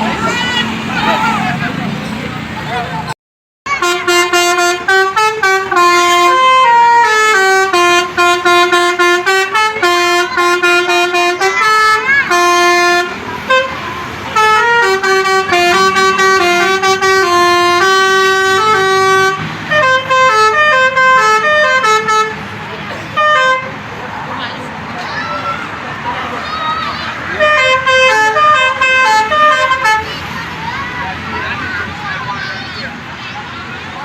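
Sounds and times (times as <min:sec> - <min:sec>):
musical air horn melody: 0:03.7 - 0:22.4, 0:23.2 - 0:23.7, 0:27.3 - 0:30.1.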